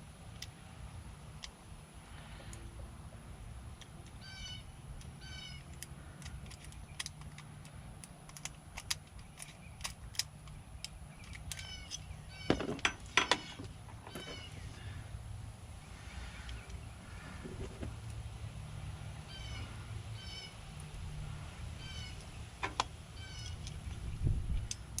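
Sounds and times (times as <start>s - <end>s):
bird calling: 4.1s - 5.8s, 9.2s - 17.9s, 19.0s - 20.7s, 21.7s - 24.4s.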